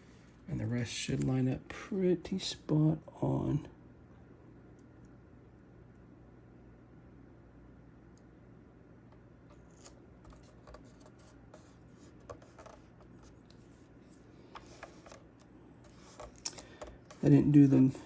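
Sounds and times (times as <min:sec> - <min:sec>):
low room hum: 0:00.0 - 0:18.0.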